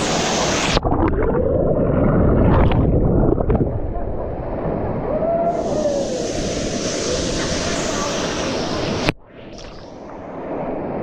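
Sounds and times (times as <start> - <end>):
muffled underwater churning water: 0.0 - 11.0.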